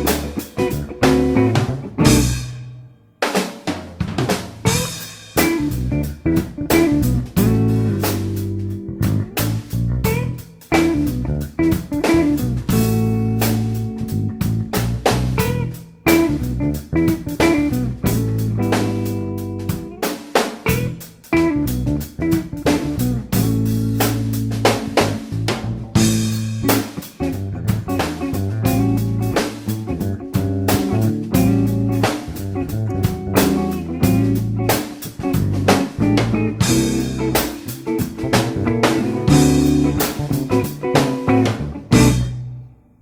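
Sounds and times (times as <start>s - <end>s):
blues-rock guitar and drums: 0.0s - 42.7s.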